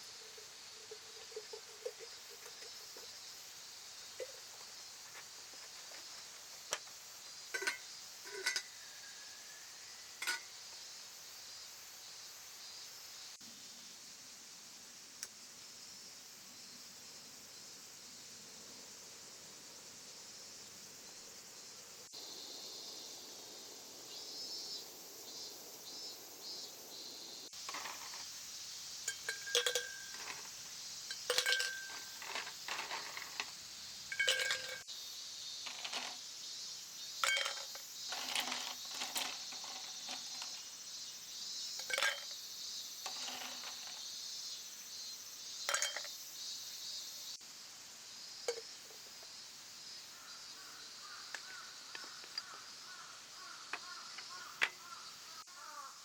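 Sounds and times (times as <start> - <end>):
high insect chorus: 0.0 - 56.0
dishes and utensils clinking: 7.6 - 8.8, 10.2 - 10.5, 27.6 - 28.2, 29.1 - 30.5, 31.1 - 33.5, 34.1 - 34.8, 35.7 - 36.2, 37.2 - 40.6, 41.8 - 42.4, 43.1 - 44.0, 45.7 - 46.1.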